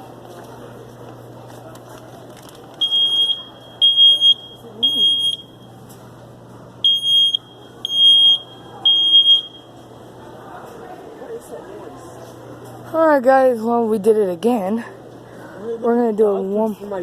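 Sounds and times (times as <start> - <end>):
smoke alarm beeping: 2.8 - 5.8, 6.8 - 9.8.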